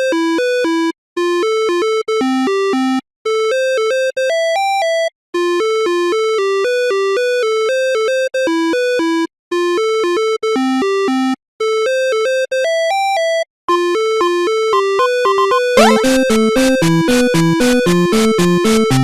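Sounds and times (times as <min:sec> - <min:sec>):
buzzy synthesized alarm melody: 0:15.8 - 0:16.4.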